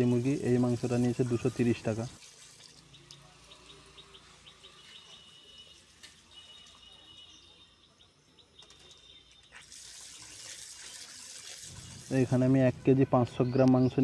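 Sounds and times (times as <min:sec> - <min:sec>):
faint bird chirps: 0:02.6 - 0:11.0.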